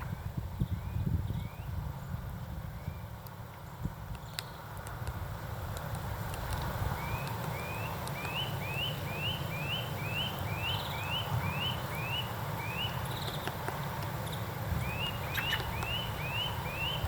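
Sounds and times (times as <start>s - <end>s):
bird repeating rising note: 14.2s - 17.0s.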